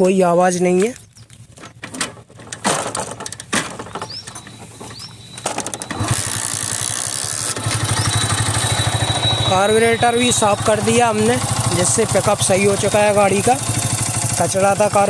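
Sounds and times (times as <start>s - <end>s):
starter knocks and clicks: 0.8s - 6.9s
motorcycle engine running: 1.0s - 15.0s.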